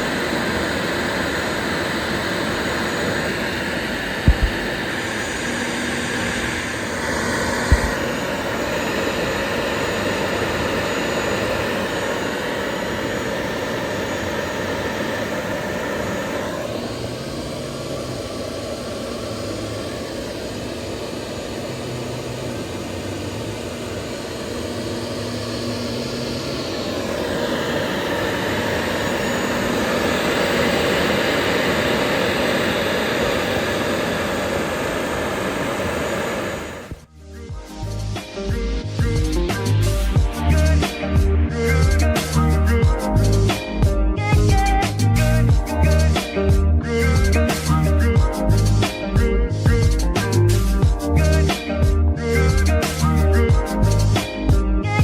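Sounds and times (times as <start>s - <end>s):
router spindle whine cutting wood: 0.0s - 37.1s
music: 37.1s - 55.0s.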